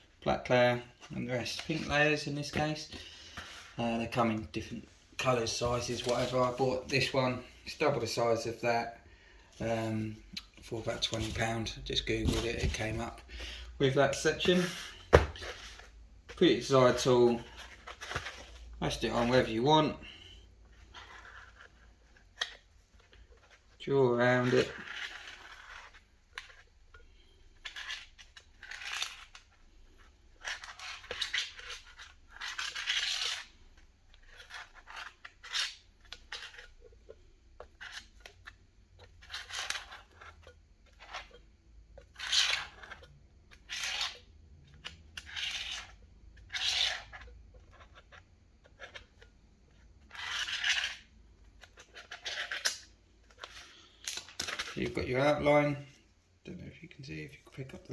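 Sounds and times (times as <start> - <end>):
pen scratching on foam: 20.7 - 26.7, 27.3 - 52.6.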